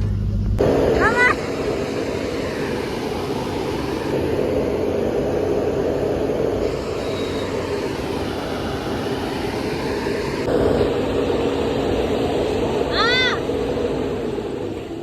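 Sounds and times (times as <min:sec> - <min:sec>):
bus engine rumbling: 0:00.0 - 0:15.0.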